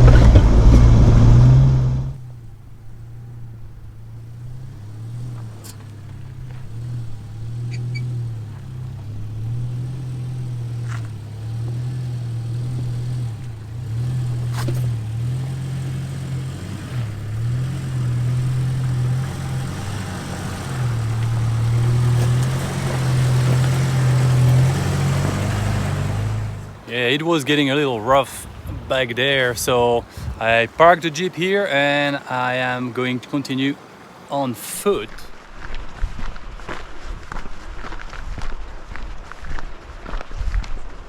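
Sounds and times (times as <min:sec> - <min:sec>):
engine droning at low speed: 0:00.0 - 0:30.9.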